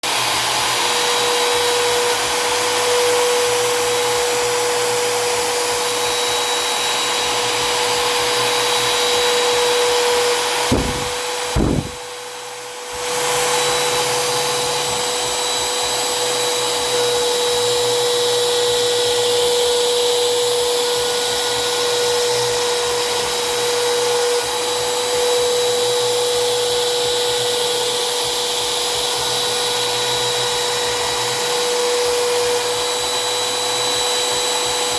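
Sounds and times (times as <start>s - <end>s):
router spindle whine: 0.0s - 34.9s
short knocks: 10.7s - 12.0s.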